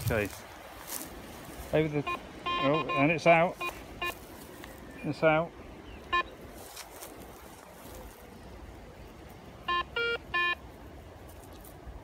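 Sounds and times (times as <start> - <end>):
metal detector beeping: 2.0 - 4.2, 6.0 - 6.3, 9.6 - 10.6.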